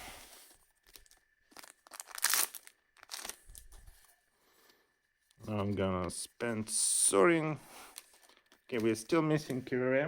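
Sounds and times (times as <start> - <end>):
foil wrappers crinkling: 0.7 - 4.0.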